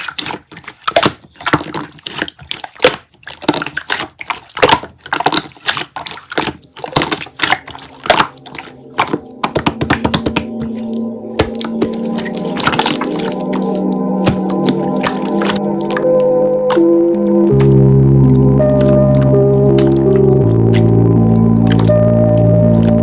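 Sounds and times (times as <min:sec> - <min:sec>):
slime squelching: 0:00.0 - 0:23.0
faint background music: 0:05.1 - 0:23.0.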